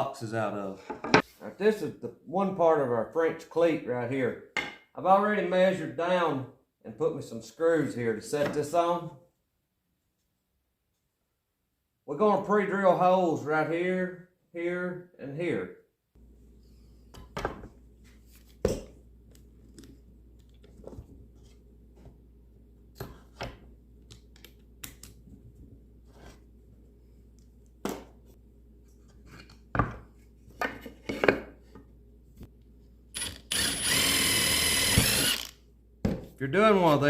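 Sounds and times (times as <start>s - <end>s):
tools and wood knocking: 0.9s - 1.3s.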